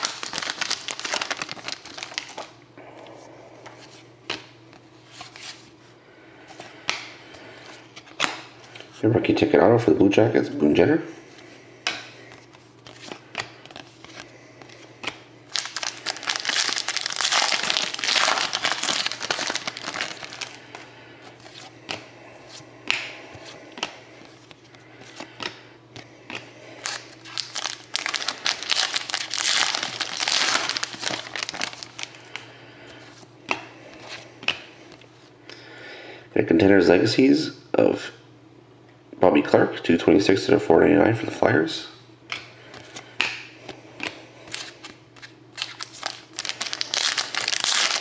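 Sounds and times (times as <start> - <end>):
card wrappers crinkling and tearing: 0.0 - 2.6, 12.4 - 21.7, 26.3 - 32.4, 44.0 - 48.0.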